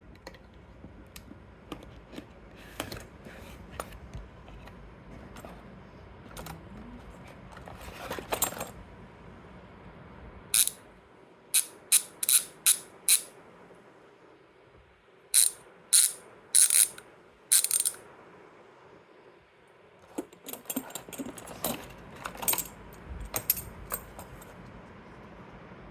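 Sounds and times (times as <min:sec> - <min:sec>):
bicycle freehub ratcheting clicks: 0:10.6 - 0:10.8, 0:11.6 - 0:13.3, 0:15.4 - 0:18.0.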